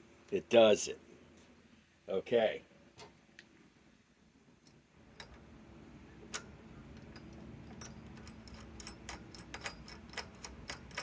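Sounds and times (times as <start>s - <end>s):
low steady hum: 0.0s - 11.0s
hand tools clicking: 6.3s - 11.0s.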